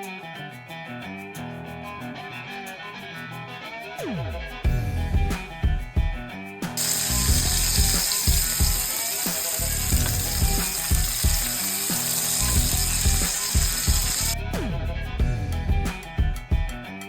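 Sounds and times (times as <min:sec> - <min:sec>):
background music: 0:00.0 - 0:17.0
fast mechanical ratcheting: 0:06.8 - 0:14.4.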